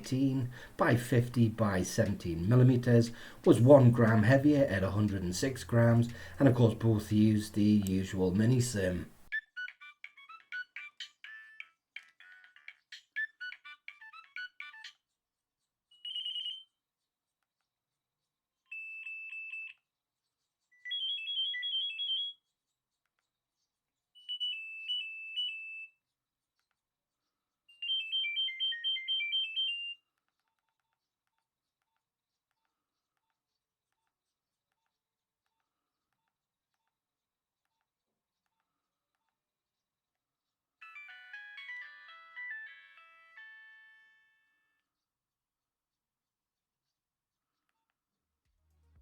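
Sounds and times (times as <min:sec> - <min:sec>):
high-pitched ringtone melody: 0:09.3 - 0:15.0, 0:15.9 - 0:16.7, 0:20.8 - 0:22.4, 0:24.2 - 0:25.9, 0:27.7 - 0:30.0, 0:40.8 - 0:44.8.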